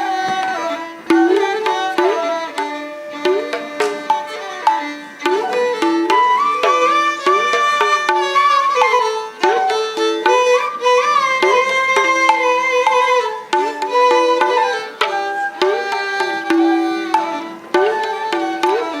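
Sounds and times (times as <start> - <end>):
hand-drum strokes: 0.0 - 19.0
stringed instrument gliding melody: 0.0 - 19.0.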